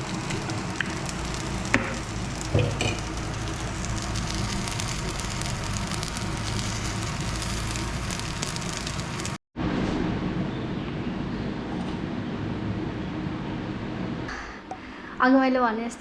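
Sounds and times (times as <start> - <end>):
food sizzling in oil: 0.0 - 9.4
utensil clanking on pan: 1.7 - 3.1.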